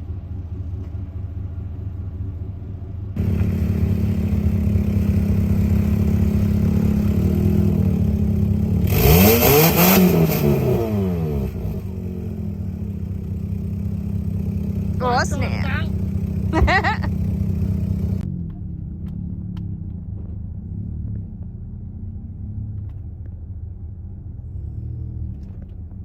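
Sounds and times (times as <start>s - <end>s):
car engine revving: 3.2s - 18.2s.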